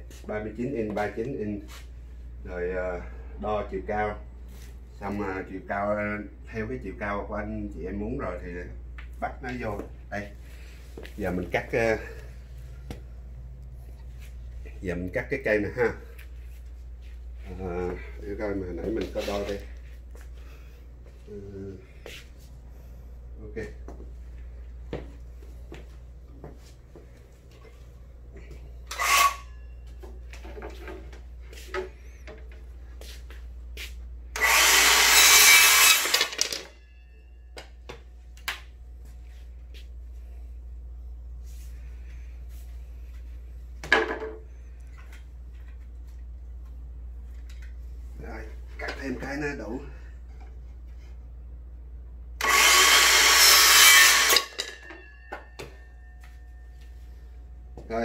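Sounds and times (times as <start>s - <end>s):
power saw cutting wood: 28.9s - 29.5s, 34.4s - 36.6s, 52.4s - 54.7s.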